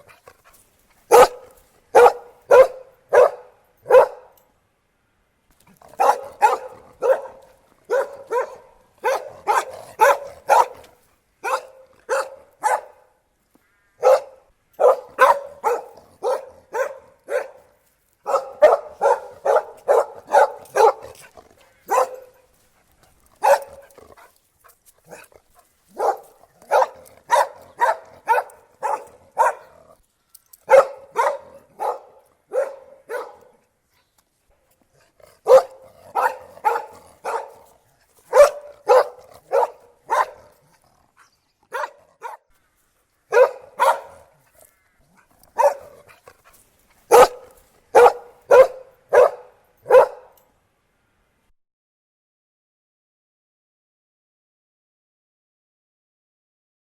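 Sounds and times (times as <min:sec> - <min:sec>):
dog barking: 0:01.1 - 0:04.4, 0:05.9 - 0:13.1, 0:14.0 - 0:22.5, 0:23.4 - 0:24.0, 0:25.1 - 0:25.3, 0:25.9 - 0:29.8, 0:30.6 - 0:33.6, 0:35.4 - 0:40.6, 0:41.7 - 0:42.5, 0:43.3 - 0:44.4, 0:45.5 - 0:46.2, 0:47.1 - 0:50.4.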